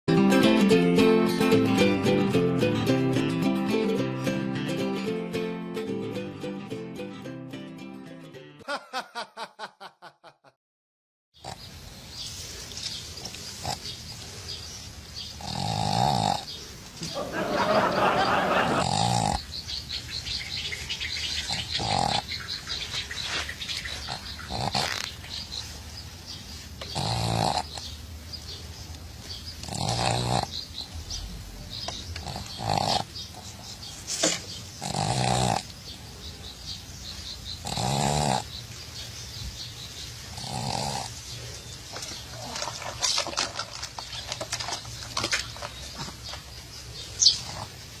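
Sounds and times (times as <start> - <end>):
dog snoring: 13.6 - 13.9, 15.3 - 16.6, 18.6 - 19.4, 21.4 - 22.4, 24.0 - 25.1, 26.9 - 27.9, 29.6 - 31.2, 32.2 - 33.5, 34.8 - 35.7, 37.6 - 38.6, 40.3 - 41.2.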